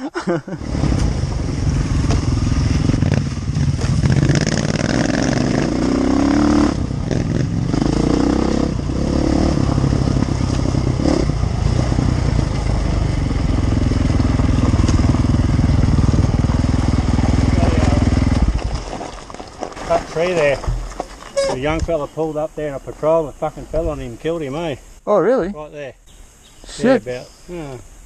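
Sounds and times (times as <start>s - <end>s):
motorcycle engine revving: 0.5s - 19.0s.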